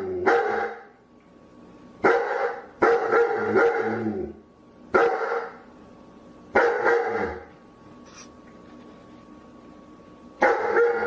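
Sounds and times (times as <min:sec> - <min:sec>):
dog barking: 0:00.2 - 0:00.9, 0:02.0 - 0:04.0, 0:05.0 - 0:05.6, 0:06.6 - 0:07.5, 0:10.4 - 0:11.0.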